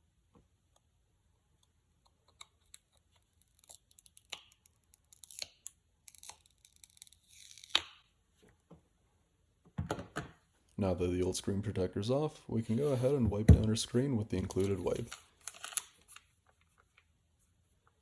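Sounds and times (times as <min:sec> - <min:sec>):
screen protector crackling and tearing: 0:02.6 - 0:08.0, 0:14.6 - 0:16.4.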